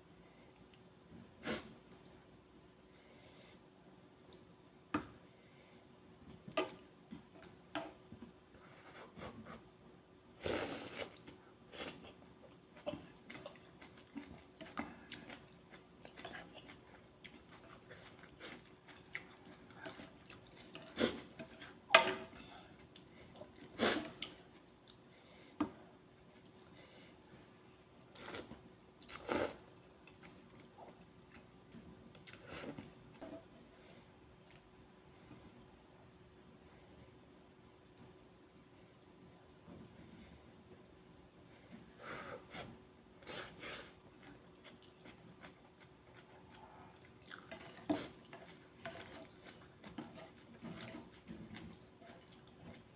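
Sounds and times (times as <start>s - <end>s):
chewing noodles: 10.8s - 25.1s, 42.8s - 52.9s.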